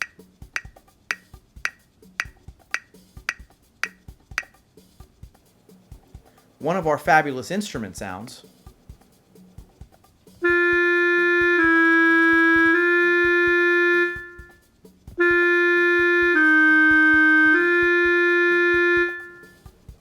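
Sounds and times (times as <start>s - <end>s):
faint regular clicks: 0.0s - 4.6s
electronic steady tone: 10.4s - 14.6s, 15.2s - 19.6s.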